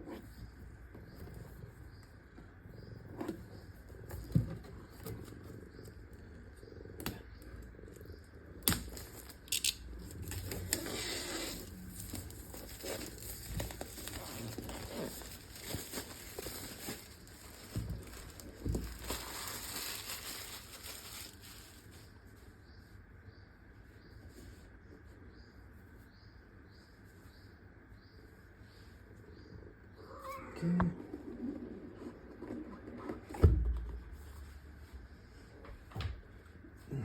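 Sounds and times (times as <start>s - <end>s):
wrapping crinkling and tearing: 8.6s - 22.1s.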